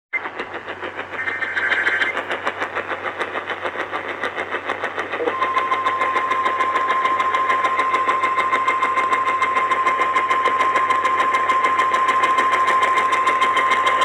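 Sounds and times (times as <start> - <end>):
pulsing radio static: 0.2 - 14.0
warbling two-tone data burst: 1.1 - 2.2.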